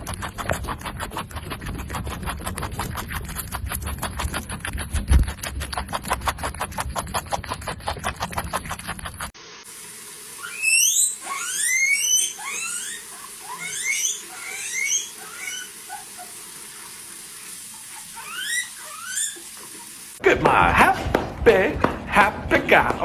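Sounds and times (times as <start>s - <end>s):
small animal squeaky calls: 10.4s - 16.3s, 18.0s - 19.6s.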